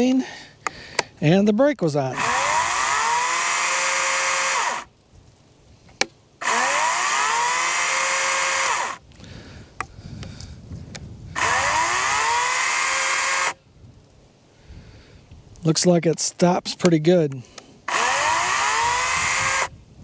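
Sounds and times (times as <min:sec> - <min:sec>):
electric chainsaw whining: 0:02.1 - 0:04.9, 0:06.4 - 0:09.0, 0:11.4 - 0:13.6, 0:17.8 - 0:19.8.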